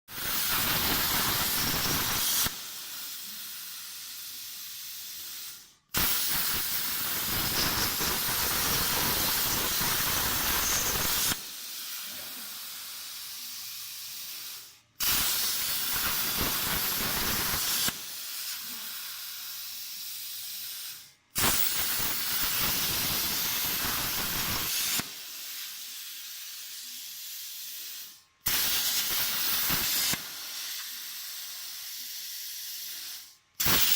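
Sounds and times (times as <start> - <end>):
plasma cutter hissing: 0.1 - 33.9.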